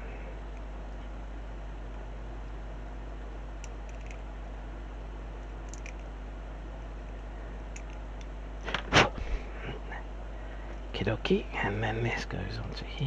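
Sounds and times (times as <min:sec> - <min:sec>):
background hiss and hum: 0:00.0 - 0:13.0
plastic parts clicking together: 0:03.6 - 0:04.2, 0:05.7 - 0:06.1, 0:07.7 - 0:08.3.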